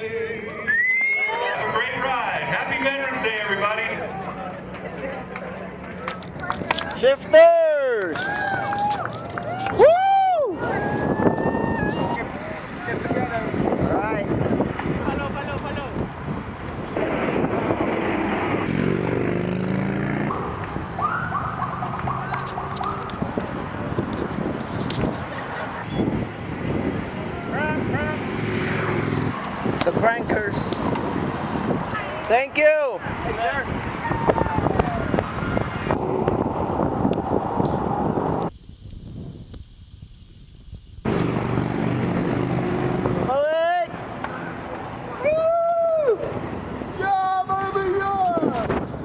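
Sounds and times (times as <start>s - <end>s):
road and vehicle noise: 0.0s - 49.0s
wind on microphone: 8.4s - 21.2s, 22.0s - 32.2s, 33.0s - 43.3s
rising and falling siren tone: 18.2s - 23.2s.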